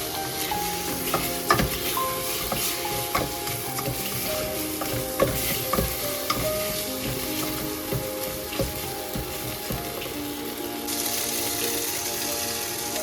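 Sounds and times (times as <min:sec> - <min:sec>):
rice sizzling in oil: 0:00.0 - 0:13.0
spoon scraping and knocking pot: 0:00.9 - 0:10.2.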